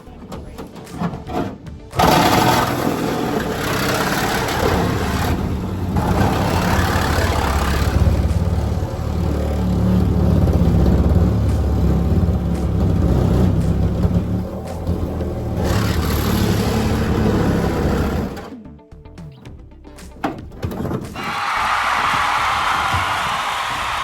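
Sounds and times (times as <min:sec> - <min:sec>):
harsh noisy layer: 0:00.0 - 0:18.5
engine starting and droning: 0:00.0 - 0:18.7.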